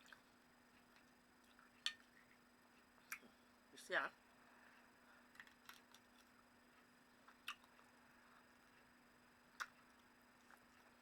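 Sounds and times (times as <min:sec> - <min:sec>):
faint eating clicks: 0:04.8 - 0:11.0.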